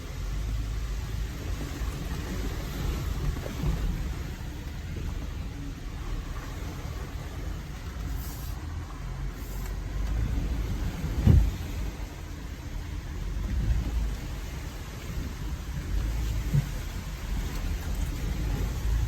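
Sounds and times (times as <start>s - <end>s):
engine low rumble: 0.0s - 19.0s
sharp thump: 11.2s - 11.6s.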